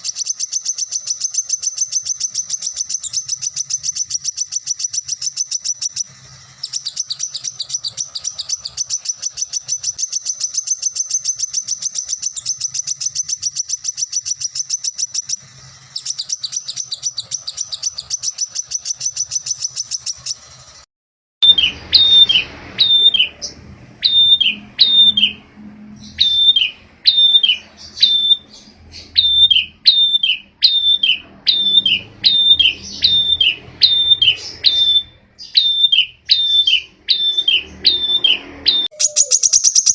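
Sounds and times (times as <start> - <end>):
bird downward-slurred whistled calls: 0.0 - 20.6, 21.4 - 39.9
songbird fast high trill: 0.0 - 20.8, 21.4 - 39.9.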